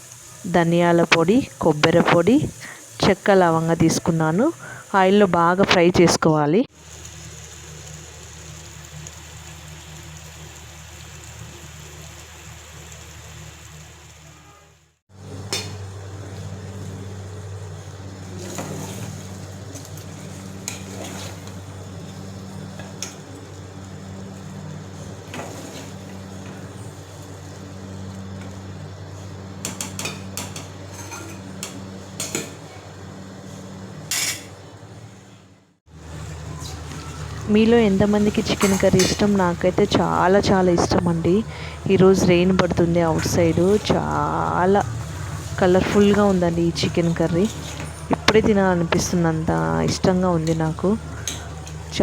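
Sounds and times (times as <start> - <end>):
steady low hum: 15.1 - 52.0
metal spoon stirring in pan: 18.4 - 21.6.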